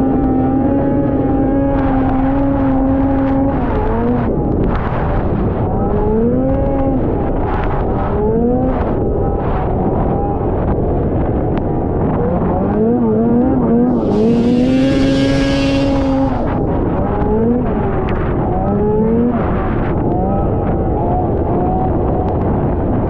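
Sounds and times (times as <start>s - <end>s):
snowmobile engine revving: 12.2s - 18.0s
loud hiss: 13.9s - 16.6s.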